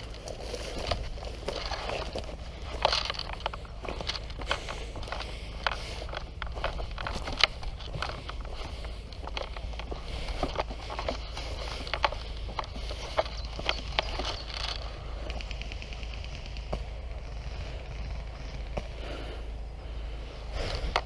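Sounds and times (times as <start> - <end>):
footsteps through dry leaves: 0.0 - 15.0
low rumble: 0.0 - 21.0.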